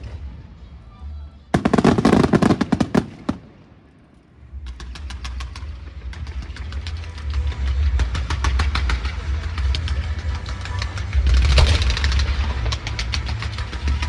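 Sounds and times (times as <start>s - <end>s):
fireworks crackling: 1.5s - 14.0s.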